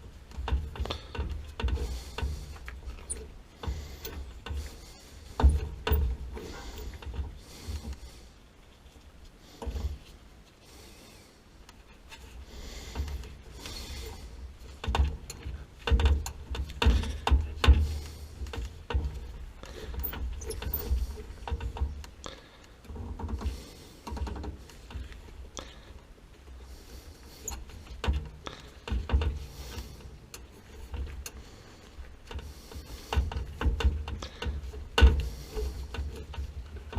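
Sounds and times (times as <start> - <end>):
heavy thumps: 0.0 - 8.0, 12.8 - 22.0
knocks and clunks of tools: 0.3 - 8.0, 12.9 - 25.2, 27.4 - 31.4, 32.3 - 36.9.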